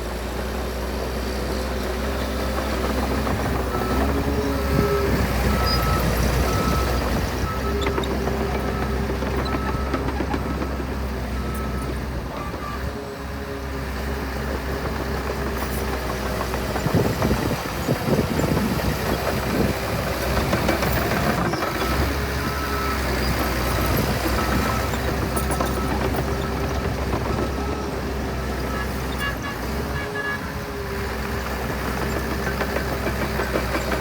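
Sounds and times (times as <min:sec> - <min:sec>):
diesel earthmover running: 0:00.0 - 0:34.0
reversing alarm beeping: 0:03.8 - 0:10.8, 0:21.0 - 0:28.0.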